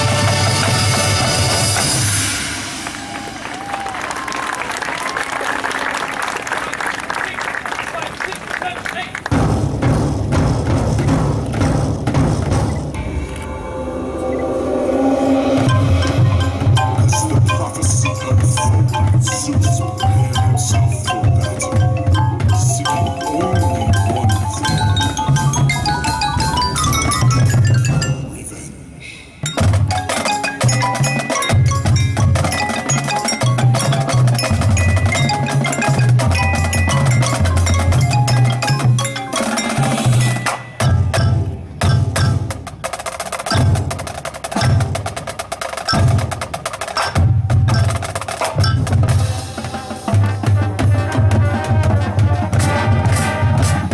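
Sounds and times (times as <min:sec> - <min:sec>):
marching band music: 0:00.0 - 0:04.8, 0:05.4 - 0:53.9
drum hits: 0:09.3 - 0:28.1, 0:29.4 - 0:53.9
marimba and glockenspiel: 0:15.4 - 0:28.7, 0:29.4 - 0:42.6, 0:43.5 - 0:43.9, 0:44.6 - 0:44.9, 0:45.9 - 0:46.2, 0:47.0 - 0:50.2.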